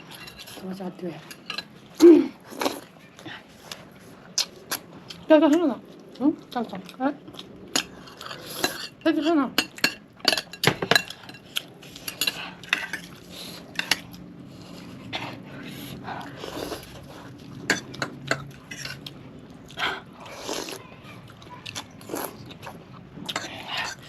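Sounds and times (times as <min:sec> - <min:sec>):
cutlery scraping: 0:00.0 - 0:00.7, 0:01.3 - 0:01.7, 0:07.8 - 0:09.0, 0:09.6 - 0:14.1, 0:17.7 - 0:19.1
cutlery and dishes clinking: 0:00.0 - 0:01.8, 0:07.8 - 0:14.1, 0:17.6 - 0:19.1
person chewing: 0:01.8 - 0:05.3, 0:11.0 - 0:24.0.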